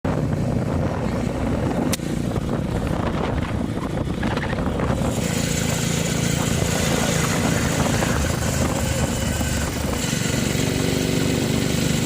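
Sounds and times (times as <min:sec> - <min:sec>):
motorcycle engine running: 0:00.1 - 0:12.0.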